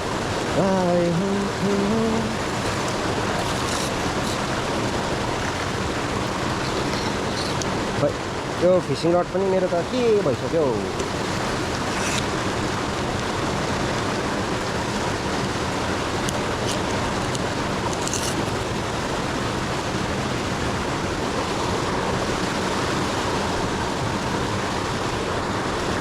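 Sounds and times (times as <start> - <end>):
river flowing: 0.0 - 26.0.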